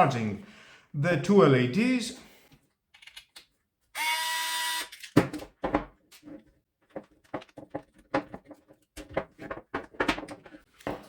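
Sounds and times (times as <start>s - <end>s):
plastic parts clicking and knocking: 5.0s - 11.0s.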